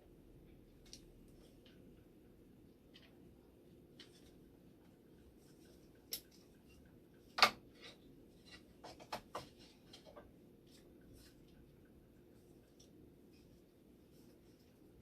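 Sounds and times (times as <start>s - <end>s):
small parts clicking and tapping: 5.7s - 7.7s.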